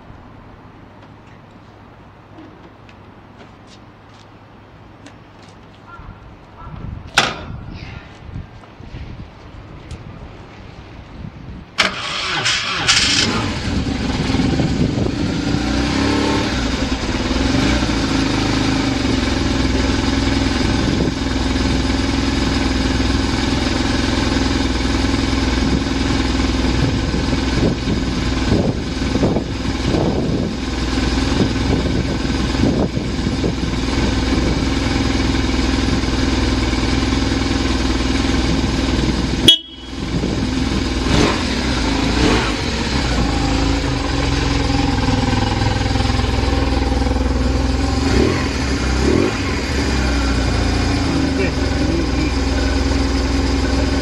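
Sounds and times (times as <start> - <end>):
motorcycle engine idling: 16.6 - 54.0.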